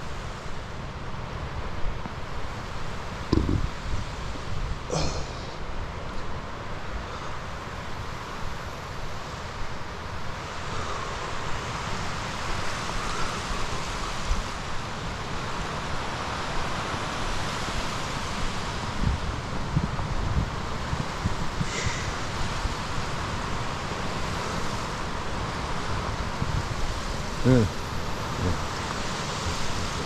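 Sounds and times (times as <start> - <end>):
wind buffeting microphone: 3.3 - 4.1.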